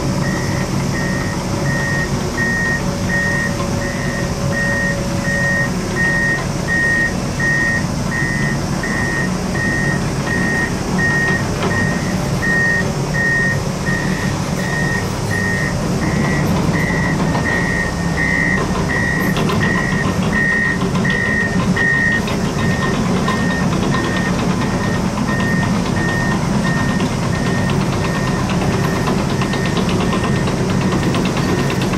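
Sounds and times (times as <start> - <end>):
diesel engine running: 0.0 - 31.9
back-up alarm beeping: 0.2 - 31.9.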